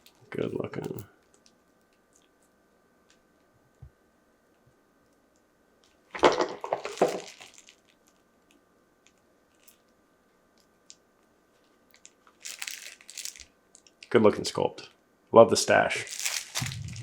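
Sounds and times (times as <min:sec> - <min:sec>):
plastic packaging crinkling: 0:06.1 - 0:08.2, 0:11.8 - 0:14.1, 0:16.0 - 0:17.0.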